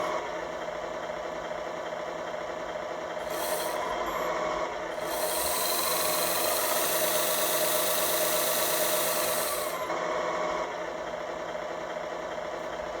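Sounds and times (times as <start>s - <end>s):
toy truck motor whirring: 3.2s - 10.0s.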